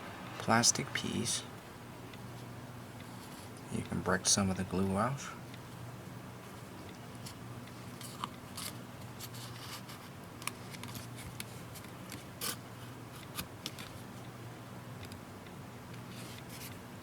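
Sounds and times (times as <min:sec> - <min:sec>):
steady low hum: 0:00.0 - 0:09.2.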